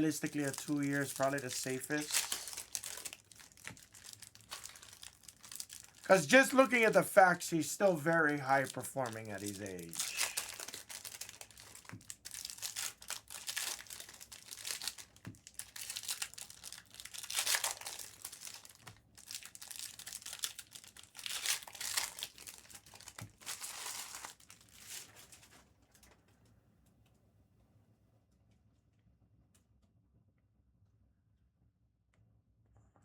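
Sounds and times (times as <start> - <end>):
plastic wrappers crinkling and tearing: 0.0 - 26.1.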